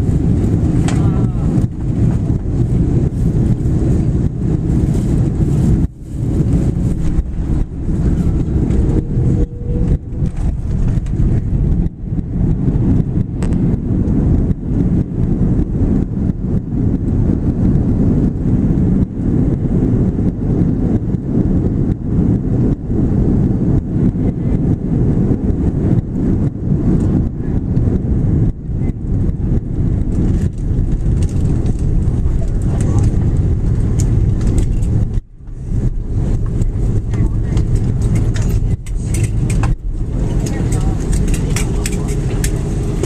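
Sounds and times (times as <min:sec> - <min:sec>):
faint whine: 0:00.0 - 0:22.2, 0:22.8 - 0:43.0
airplane cabin rumble: 0:00.0 - 0:43.0.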